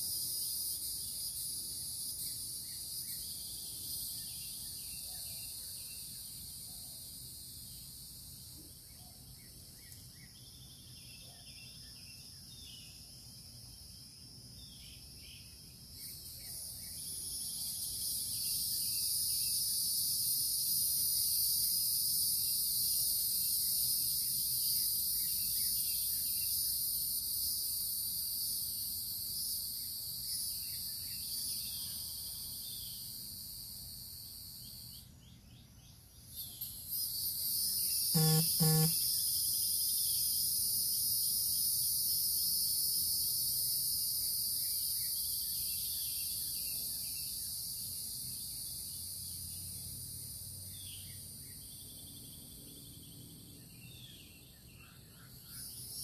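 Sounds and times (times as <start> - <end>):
insects trilling: 0.0 - 56.0
faint bird chirps: 2.2 - 7.2, 34.7 - 39.4.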